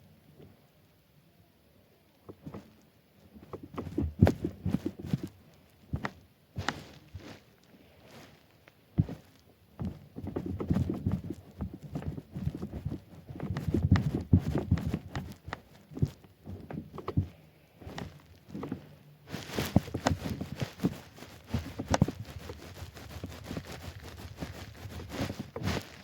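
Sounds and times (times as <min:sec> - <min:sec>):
bed creaking: 0:03.4 - 0:05.3, 0:05.9 - 0:22.2.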